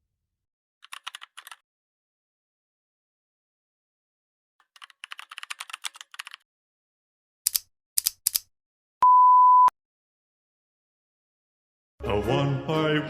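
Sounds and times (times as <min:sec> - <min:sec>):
sharp clicks: 0:07.5 - 0:08.5
electronic beep: 0:09.0 - 0:09.7.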